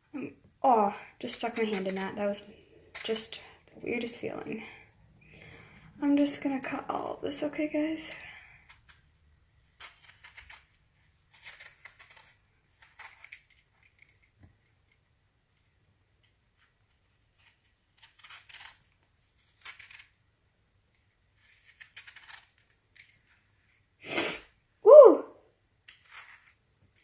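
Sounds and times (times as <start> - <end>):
cutting by hand: 9.7 - 14.3, 17.3 - 20.2, 21.4 - 23.2.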